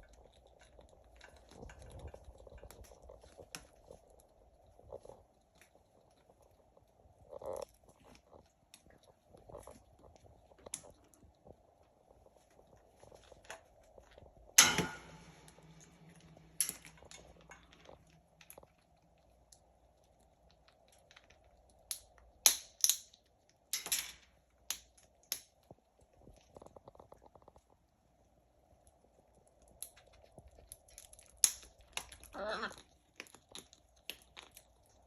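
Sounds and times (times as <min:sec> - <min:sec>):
parrots cracking hard snacks: 0:15.6 - 0:27.4, 0:29.4 - 0:35.0.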